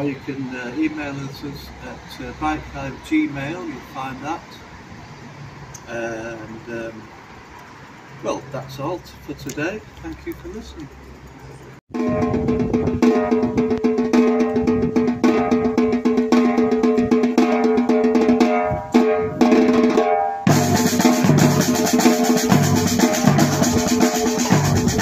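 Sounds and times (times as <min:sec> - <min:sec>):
drum kit steady beat: 0:11.9 - 0:25.0.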